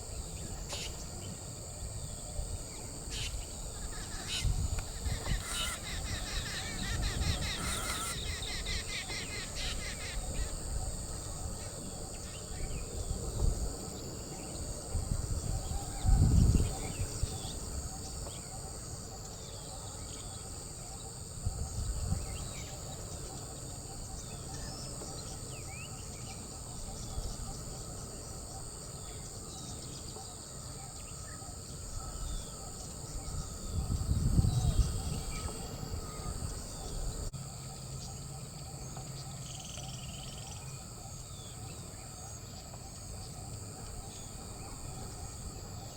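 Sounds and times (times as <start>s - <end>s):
insects droning: 0.0s - 45.9s
birds chirping: 3.2s - 10.7s.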